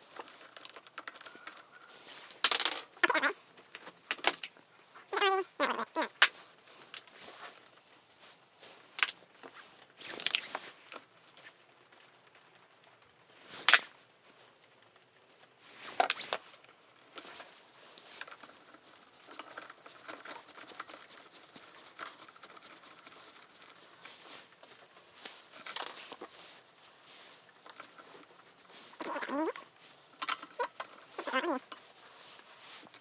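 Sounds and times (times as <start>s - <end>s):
clicks and scrapes of engine parts: 0.0s - 3.0s, 15.8s - 33.0s.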